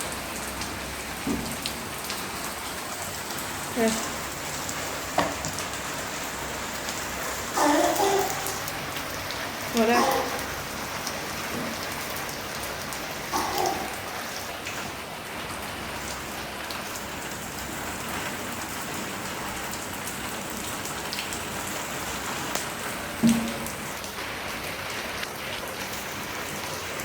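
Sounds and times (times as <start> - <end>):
steady rain falling: 0.0 - 27.0
raindrop ticks: 16.1 - 24.3.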